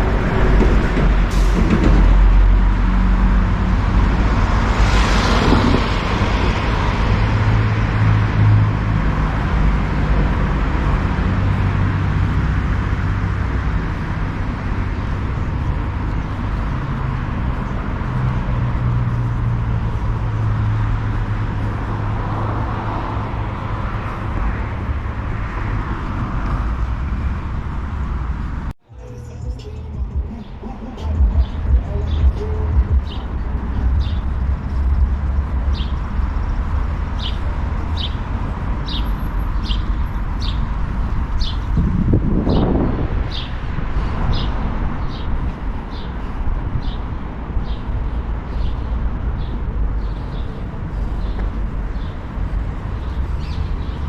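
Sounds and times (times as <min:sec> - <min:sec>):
road noise: 0:00.0 - 0:54.0
vehicle engine running: 0:26.0 - 0:38.8.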